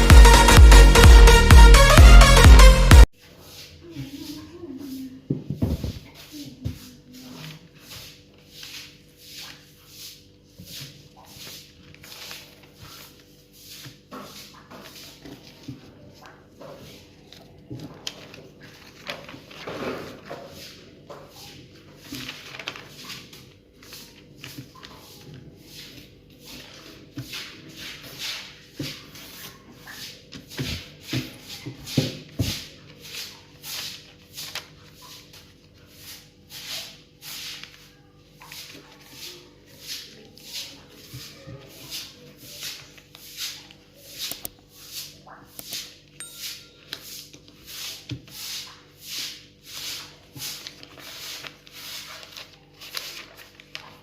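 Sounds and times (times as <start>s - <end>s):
paper being folded and creased: 11.3s - 16.4s, 17.0s - 29.6s, 32.7s - 45.1s, 49.7s - 54.0s.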